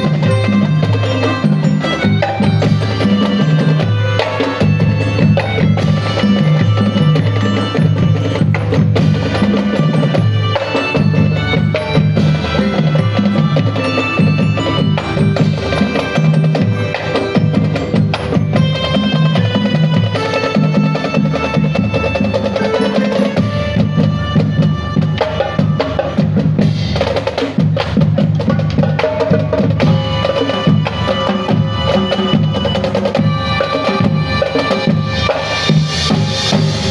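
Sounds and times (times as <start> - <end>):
drums and percussion: 0.0 - 36.9
marching band playing: 0.0 - 36.9.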